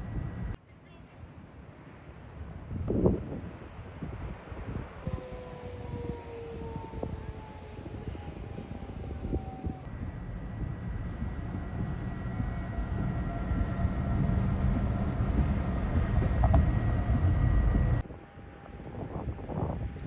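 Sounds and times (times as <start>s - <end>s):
strong storm wind: 0.0s - 0.6s, 1.3s - 20.0s
faint steady whistle: 5.1s - 19.8s.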